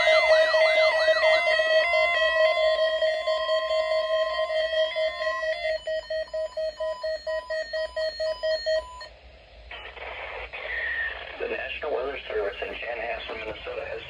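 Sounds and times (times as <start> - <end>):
electronic alert tones: 0.0 - 9.1.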